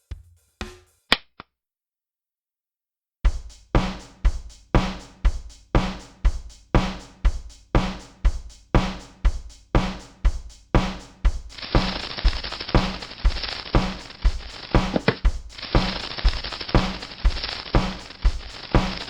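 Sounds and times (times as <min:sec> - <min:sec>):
steady drum beat: 0:00.0 - 0:01.1, 0:03.3 - 0:19.0
steady hiss: 0:11.5 - 0:19.0.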